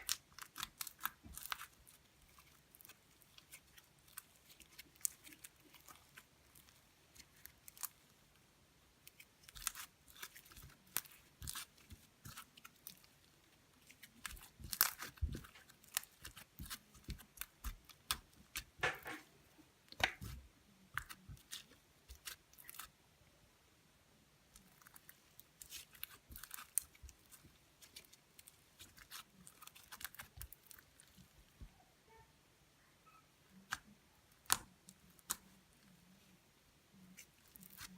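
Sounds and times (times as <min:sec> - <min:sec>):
slime squelching and popping: 0:00.0 - 0:08.0, 0:09.0 - 0:13.2, 0:13.8 - 0:19.2, 0:19.9 - 0:22.9, 0:24.6 - 0:31.2.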